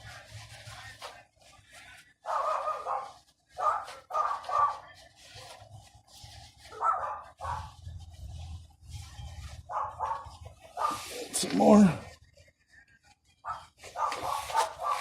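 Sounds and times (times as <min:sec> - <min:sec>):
dog barking: 0:02.2 - 0:04.9, 0:06.7 - 0:07.8, 0:09.7 - 0:11.2, 0:13.4 - 0:15.0.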